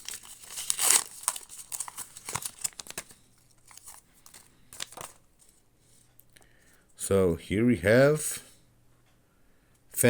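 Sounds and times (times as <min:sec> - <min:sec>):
wrapper tearing and crinkling: 0:00.0 - 0:05.2.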